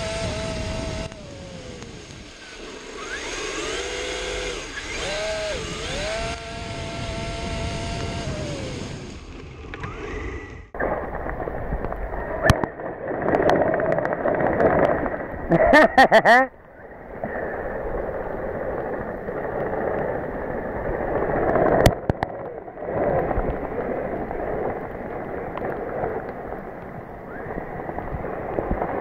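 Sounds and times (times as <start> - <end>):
electric motor whining: 0.0 - 10.7.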